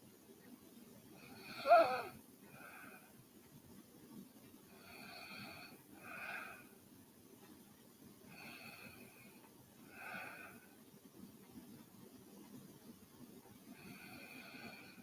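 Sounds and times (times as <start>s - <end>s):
woman's wheezy breathing: 1.2s - 3.2s.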